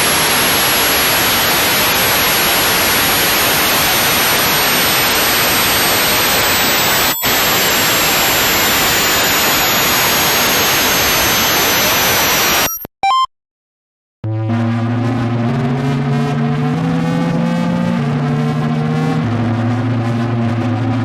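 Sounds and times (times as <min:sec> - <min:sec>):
harsh static hiss: 0:00.0 - 0:12.7
short electronic blips: 0:05.4 - 0:13.3.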